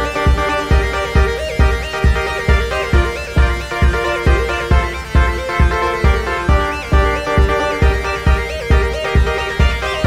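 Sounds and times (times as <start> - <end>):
electronic music with thumping beat: 0.0 - 10.0.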